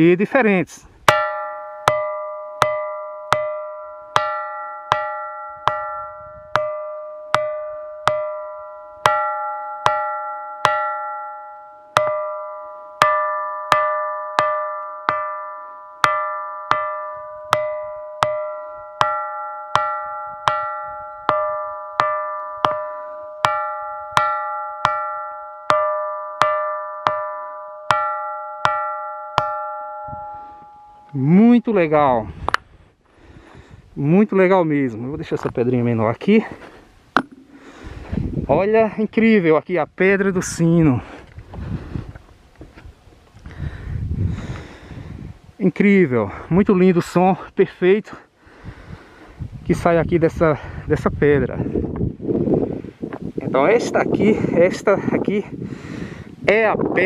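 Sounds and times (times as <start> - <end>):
stone striking ringing rock: 1.0 - 32.6, 35.3 - 37.6.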